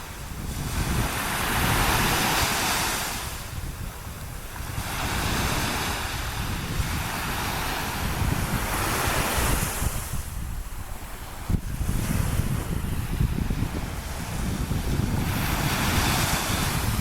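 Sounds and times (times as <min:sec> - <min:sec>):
waves washing onto sand: 0:00.0 - 0:17.0
wind buffeting microphone: 0:00.0 - 0:17.0.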